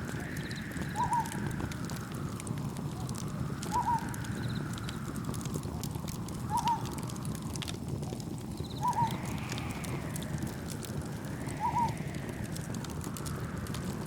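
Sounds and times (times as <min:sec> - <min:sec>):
campfire crackling and popping: 0:00.0 - 0:14.0
cricket chirps: 0:00.2 - 0:01.6, 0:03.7 - 0:05.1
soft waves: 0:08.8 - 0:14.0.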